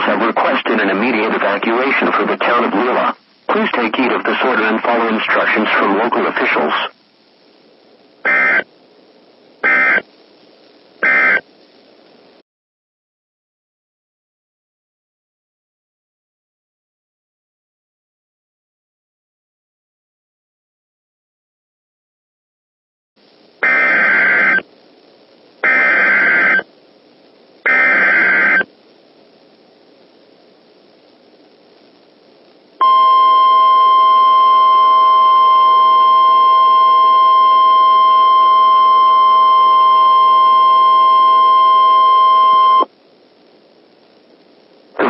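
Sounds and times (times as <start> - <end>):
faint hiss: 0.0 - 12.4, 23.2 - 45.0
digital data tone bursts: 8.3 - 8.7, 9.6 - 10.0, 11.0 - 11.4, 23.6 - 24.6, 25.6 - 26.6, 27.7 - 28.7, 32.8 - 42.9.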